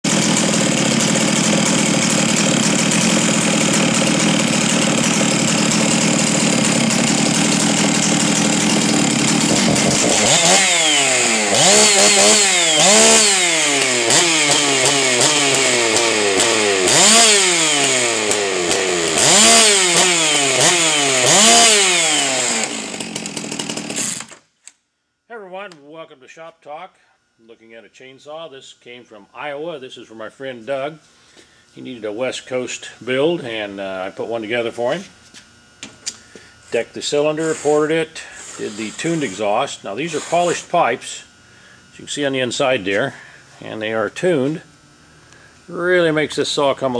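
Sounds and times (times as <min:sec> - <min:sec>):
chainsaw revving: 0:00.0 - 0:24.4, 0:36.1 - 0:41.3.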